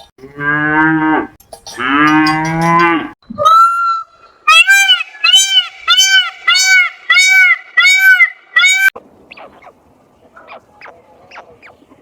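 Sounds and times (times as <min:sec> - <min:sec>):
bird honking calls: 0:04.5 - 0:09.7.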